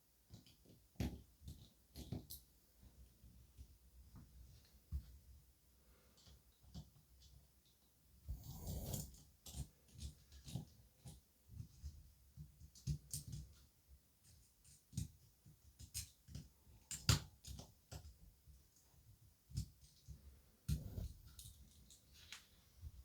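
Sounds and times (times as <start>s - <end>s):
small clicks and taps: 0.2s - 5.2s, 9.4s - 22.6s.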